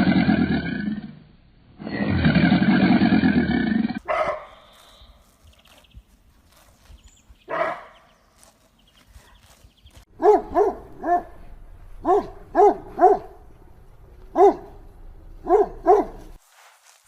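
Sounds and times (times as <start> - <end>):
dog barking: 4.0 - 4.6, 7.5 - 8.1, 10.2 - 13.5, 14.3 - 14.8, 15.4 - 16.4.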